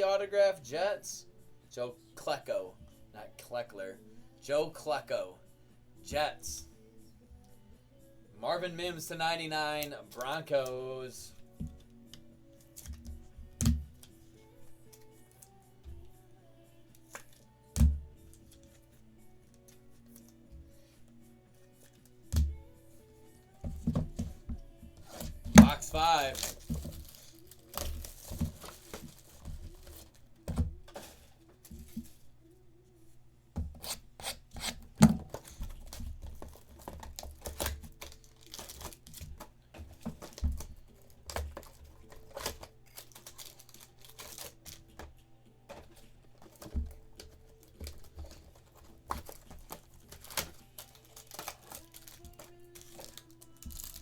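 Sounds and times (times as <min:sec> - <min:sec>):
wrappers tearing and crinkling: 0:25.0 - 0:30.2, 0:34.6 - 0:39.4, 0:40.1 - 0:45.0, 0:46.0 - 0:54.0.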